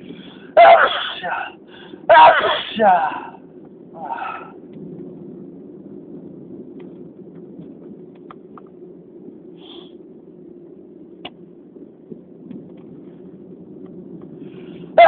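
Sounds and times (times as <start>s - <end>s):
low background hum: 0.0s - 15.0s
sneezes: 0.6s - 3.4s, 4.0s - 4.5s.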